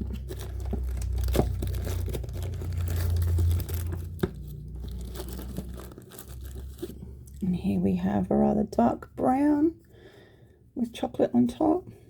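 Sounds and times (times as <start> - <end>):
cardboard tearing: 0.0 - 7.0
packaging crinkling: 0.0 - 7.4.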